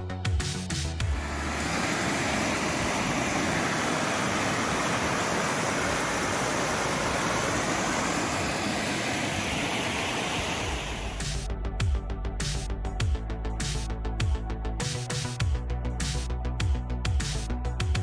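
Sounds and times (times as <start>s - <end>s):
rushing water: 1.0s - 11.4s.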